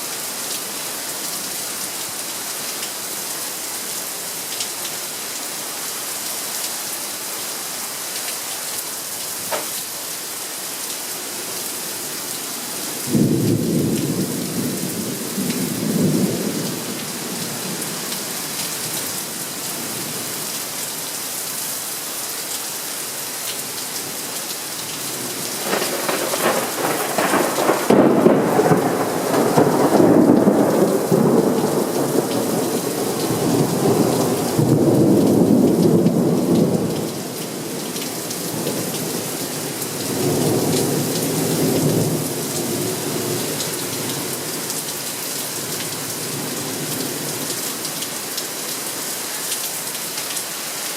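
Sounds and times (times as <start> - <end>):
steady rain on surfaces: 0.0 - 50.9
thunder clap and rumble: 25.6 - 36.0.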